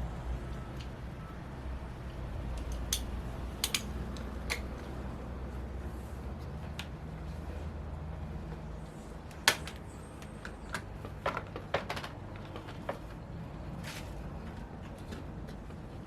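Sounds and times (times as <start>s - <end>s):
clicks and knocks of tools: 2.5s - 5.0s.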